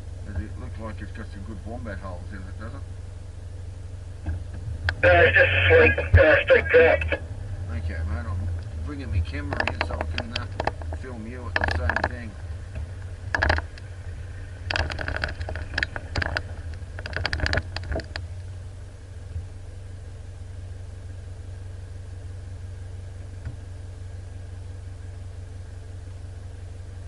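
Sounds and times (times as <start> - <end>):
engine idling low rumble: 0.0 - 27.0.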